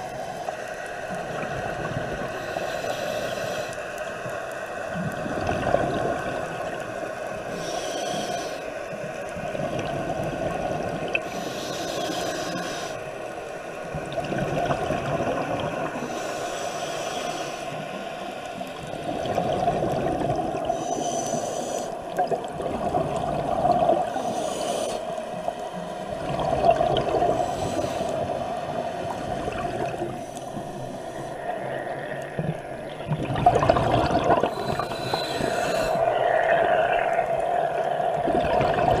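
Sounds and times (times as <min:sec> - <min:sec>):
regulator inhale hiss: 0:02.2 - 0:04.6, 0:07.2 - 0:09.1, 0:11.2 - 0:13.1, 0:15.9 - 0:18.8, 0:20.6 - 0:22.2, 0:24.0 - 0:26.0, 0:27.3 - 0:29.5, 0:30.1 - 0:32.3, 0:34.4 - 0:36.5
exhaled bubbles gurgling: 0:04.9 - 0:08.3, 0:09.3 - 0:12.8, 0:13.8 - 0:16.2, 0:18.6 - 0:39.0.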